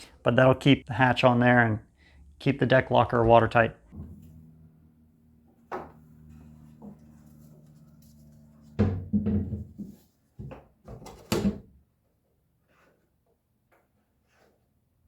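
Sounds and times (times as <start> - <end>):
low steady hum: 3.8 - 9.9
hatch cover knocks and clunks: 8.7 - 11.7.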